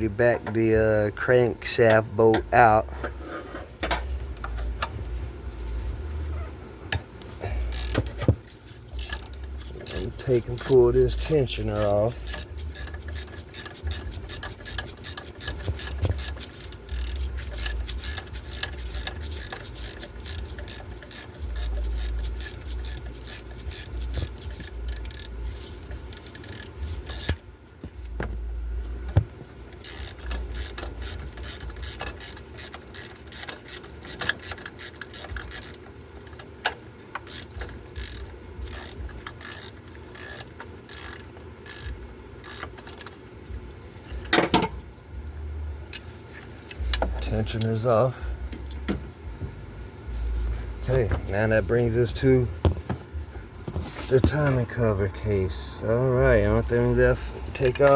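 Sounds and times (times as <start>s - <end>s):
socket ratchet clicking: 7.7s - 8.3s, 8.9s - 25.4s, 26.0s - 27.4s, 29.8s - 43.1s.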